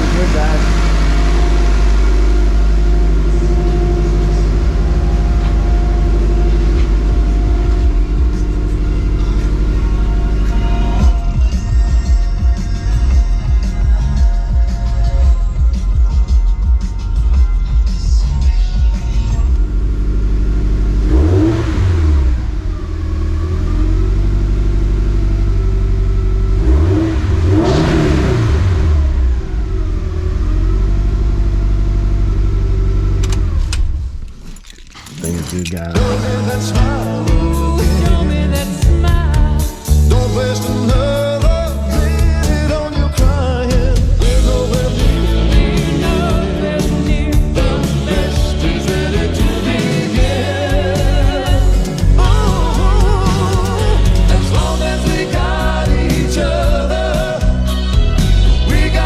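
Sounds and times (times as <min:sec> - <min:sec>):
car engine running: 0:00.0 - 0:12.0
car engine idling and revving: 0:00.0 - 0:36.5.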